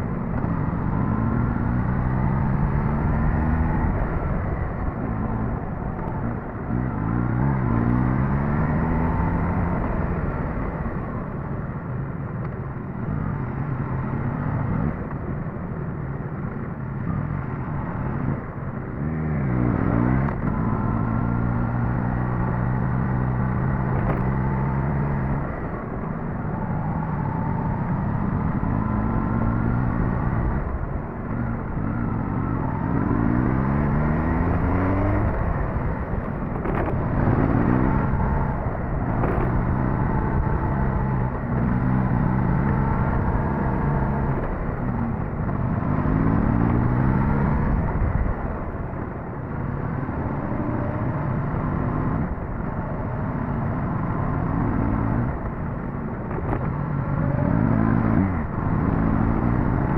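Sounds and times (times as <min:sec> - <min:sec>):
road and wind noise: 0:00.0 - 0:59.9
motorcycle engine revving: 0:18.9 - 0:48.9, 0:49.9 - 0:59.9.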